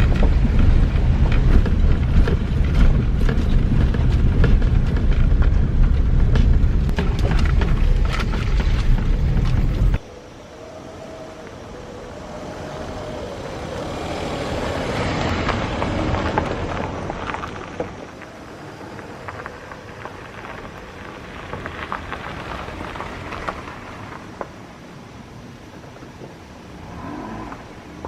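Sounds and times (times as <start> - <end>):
vehicle passing: 5.6 - 24.4.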